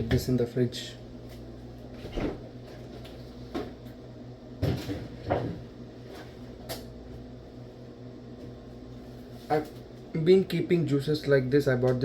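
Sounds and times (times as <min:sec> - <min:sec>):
refrigerator humming: 0:00.0 - 0:12.0
clunks and knocks in refrigerator: 0:04.6 - 0:05.7.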